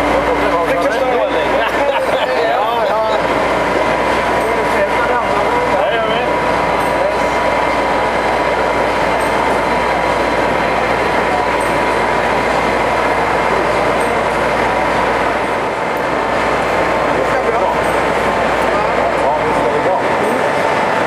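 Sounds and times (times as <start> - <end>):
thin steady whine: 0.0 - 21.0
vehicle running noise: 0.0 - 21.0.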